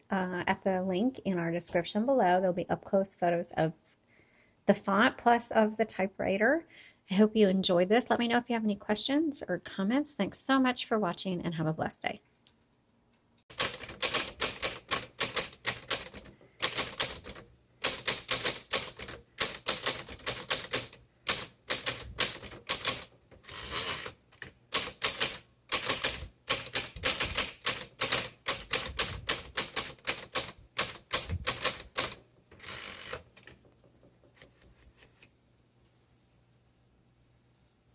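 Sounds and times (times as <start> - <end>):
typewriter key strikes: 13.5 - 23.1, 24.8 - 33.5
typewriter carriage return rasp: 13.5 - 33.6.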